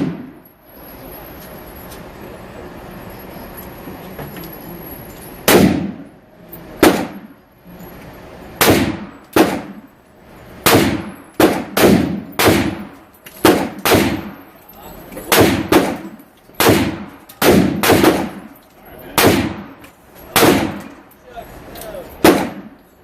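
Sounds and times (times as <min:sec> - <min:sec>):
rifle shots: 0:00.0 - 0:00.4, 0:05.5 - 0:06.1, 0:06.8 - 0:07.3, 0:08.6 - 0:09.8, 0:10.6 - 0:14.4, 0:15.3 - 0:18.5, 0:19.2 - 0:19.8, 0:20.4 - 0:21.0, 0:22.2 - 0:22.7.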